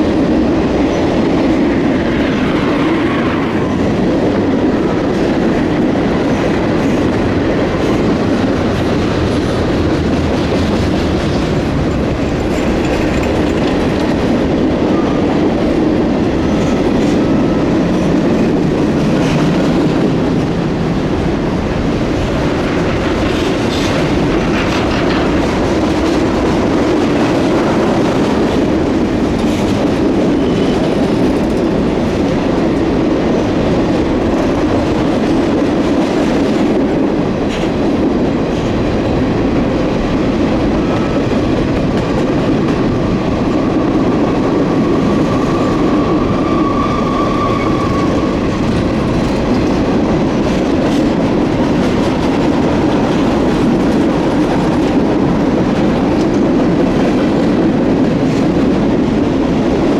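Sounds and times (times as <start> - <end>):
railroad cars rumbling past: 0.0 - 59.9
wheels clacking over rail joints: 21.2 - 33.4.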